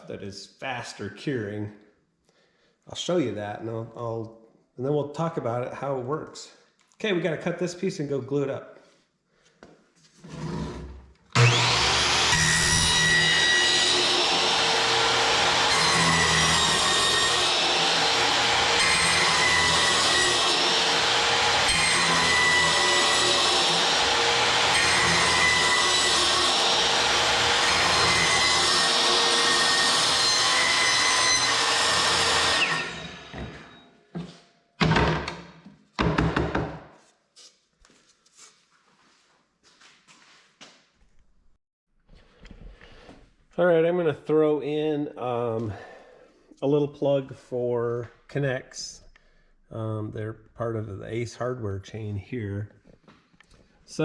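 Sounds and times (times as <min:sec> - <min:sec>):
power saw cutting wood: 0:10.3 - 0:33.8.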